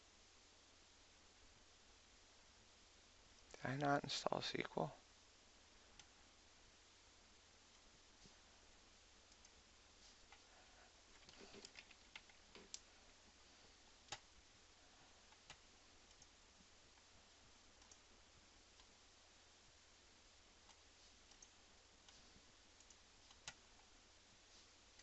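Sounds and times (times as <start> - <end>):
computer clicks: 9.3 - 9.6, 11.2 - 12.9, 14.1 - 14.3, 17.8 - 18.0, 20.6 - 21.6.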